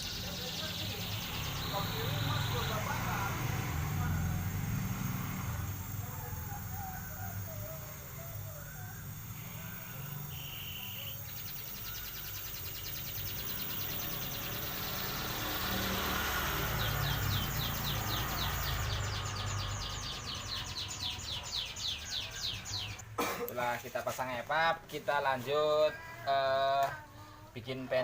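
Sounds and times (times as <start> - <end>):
high rhythmic chirping: 0.0 - 23.0
torch flame hissing: 3.3 - 11.0.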